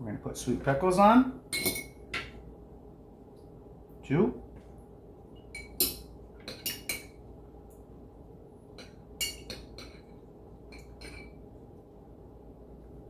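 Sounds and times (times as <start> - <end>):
utensil clinking on dishware: 1.5 - 2.3, 5.6 - 7.2, 8.8 - 11.4.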